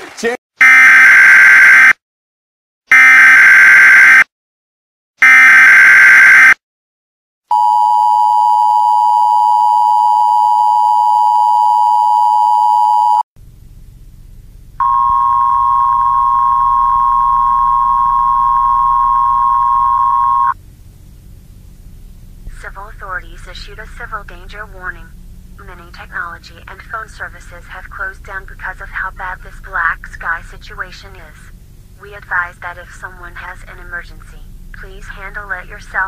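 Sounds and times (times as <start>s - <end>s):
low hum: 13.4s - 36.0s
steady tone: 14.8s - 20.6s
two-tone attention signal: 14.8s - 20.6s.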